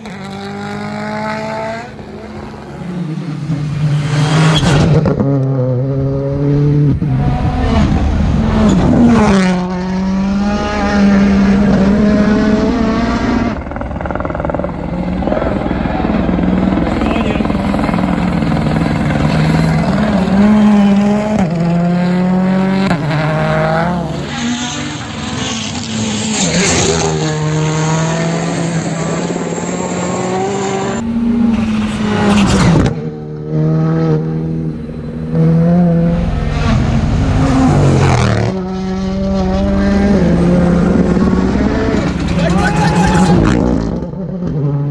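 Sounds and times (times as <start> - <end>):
rally car engines revving hard: 0.0 - 44.9.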